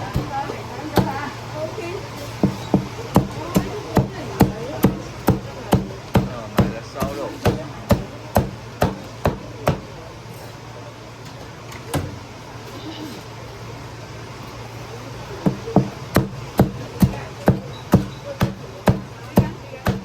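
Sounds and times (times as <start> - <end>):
steady low hum: 0.0 - 20.0
cleaver chopping on wooden block: 2.4 - 9.9, 15.5 - 20.0.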